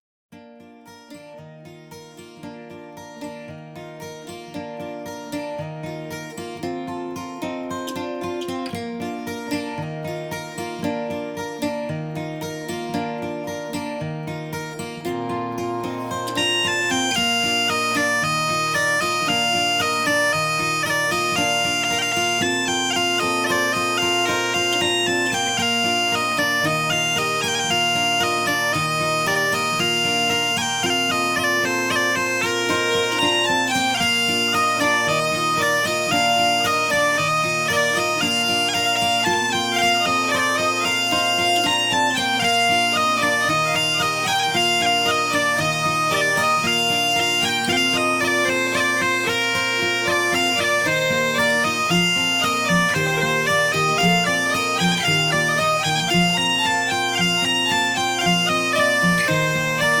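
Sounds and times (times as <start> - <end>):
bagpipe playing lively melody: 14.9 - 60.0.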